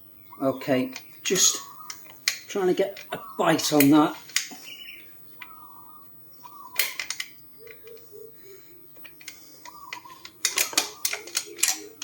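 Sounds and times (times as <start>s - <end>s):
metallic clicks and scrapes: 6.8s - 8.1s, 8.9s - 12.0s.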